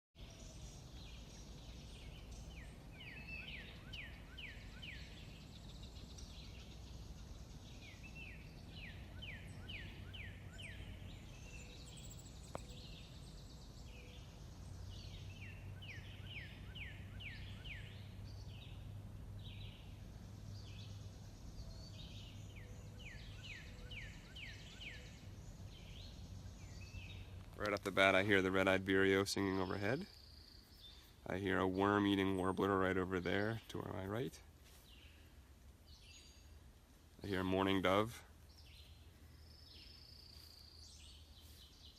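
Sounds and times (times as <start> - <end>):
faint bird calls: 0.2 - 41.9
low steady rumble: 0.2 - 41.9
songbird singing falling notes: 0.2 - 41.9.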